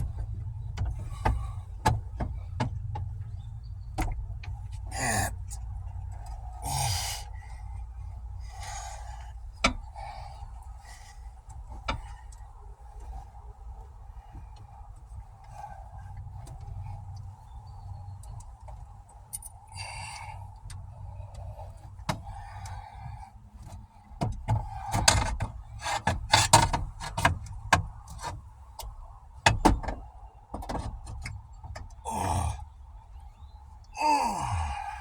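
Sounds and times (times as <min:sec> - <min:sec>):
faint steady hum: 0:00.0 - 0:35.0
short falling groan: 0:32.0 - 0:32.6, 0:33.9 - 0:35.0.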